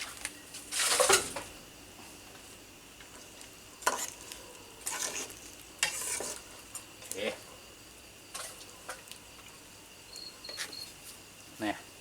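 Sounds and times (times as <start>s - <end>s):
spoon scraping cooking pot: 4.9s - 6.5s.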